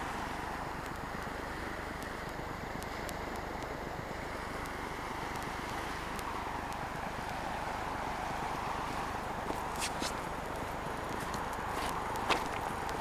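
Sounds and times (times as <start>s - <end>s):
waves washing on shore: 0.0s - 13.0s
wind: 0.0s - 13.0s.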